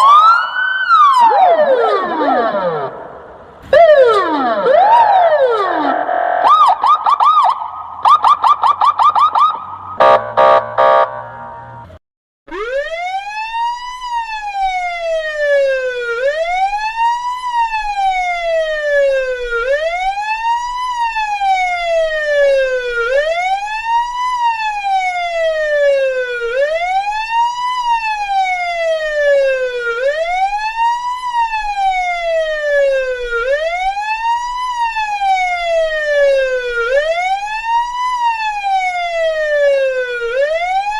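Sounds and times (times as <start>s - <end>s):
police siren yelping warble: 0.0s - 11.2s, 12.5s - 40.9s
police siren slow wail: 0.0s - 40.9s
quacking horn blasts: 10.0s - 12.0s.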